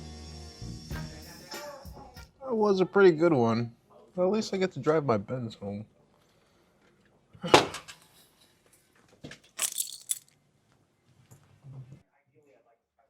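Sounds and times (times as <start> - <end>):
handling noises: 9.0 - 10.4
keys jingling: 9.6 - 10.4.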